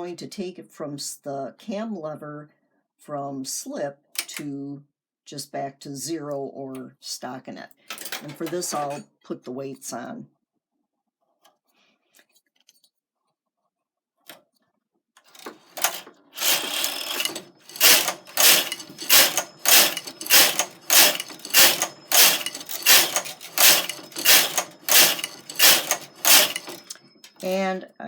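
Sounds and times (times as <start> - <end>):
knitting machine carriage clatter: 8.0 - 9.0, 15.2 - 27.7.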